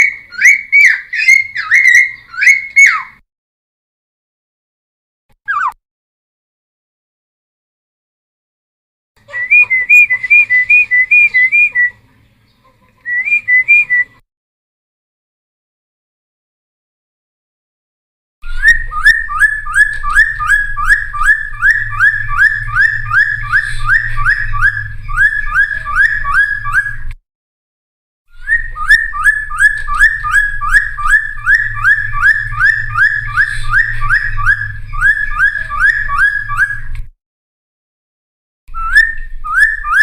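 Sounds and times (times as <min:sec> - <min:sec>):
bird whistling fast notes: 0:05.5 - 0:05.8, 0:18.5 - 0:27.1, 0:28.4 - 0:36.9.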